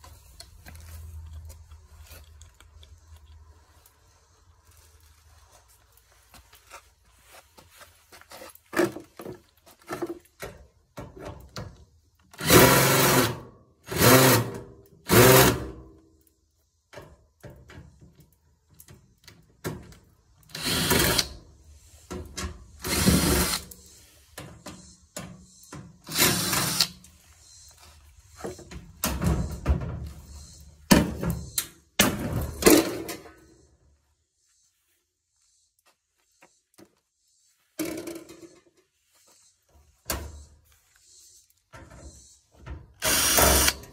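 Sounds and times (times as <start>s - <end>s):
power drill bursts: 12.4s - 15.7s, 20.5s - 21.4s, 22.8s - 23.7s, 26.0s - 27.0s, 43.0s - 43.9s.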